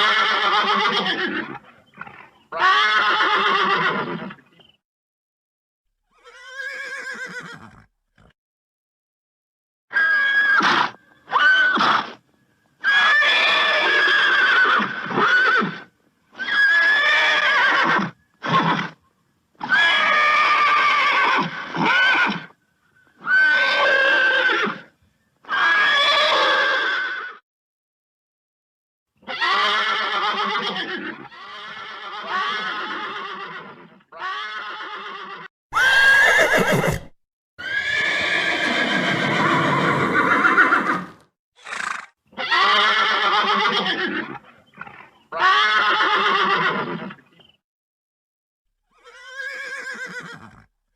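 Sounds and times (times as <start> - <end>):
horse neighing: 0.0 - 4.4, 6.1 - 8.3, 29.2 - 47.2, 48.9 - 50.8.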